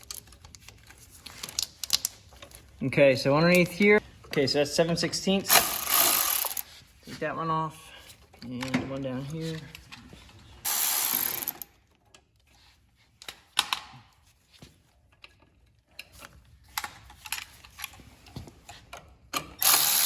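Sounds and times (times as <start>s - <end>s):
ratchet wrench ratcheting: 5.5s - 6.7s, 10.7s - 11.7s, 19.6s - 20.0s.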